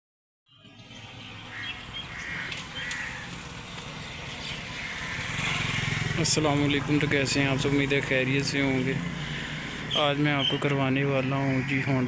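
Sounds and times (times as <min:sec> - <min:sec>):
crow cawing: 0:01.5 - 0:03.6, 0:04.5 - 0:06.0.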